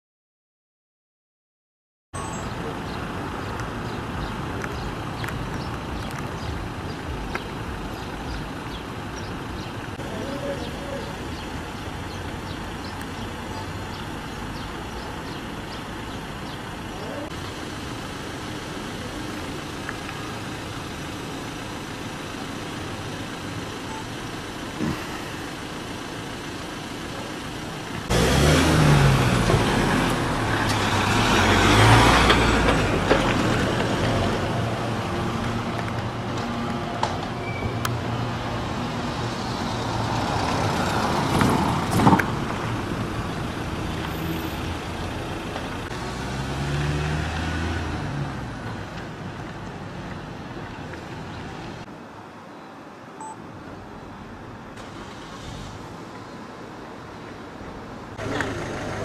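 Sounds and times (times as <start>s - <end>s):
heavy vehicle engine running: 2.2s - 51.9s, 58.2s - 59.0s
road traffic hum: 2.2s - 59.0s.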